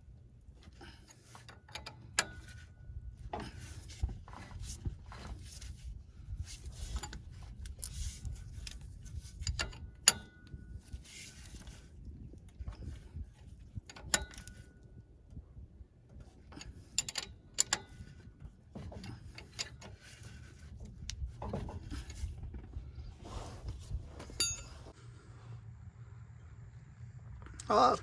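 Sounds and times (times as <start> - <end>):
steady low hum: 0.0 - 28.0
metal tools clinking and scraping: 12.6 - 14.9, 16.4 - 25.0
sharp ringing metallic clinks: 24.4 - 24.8.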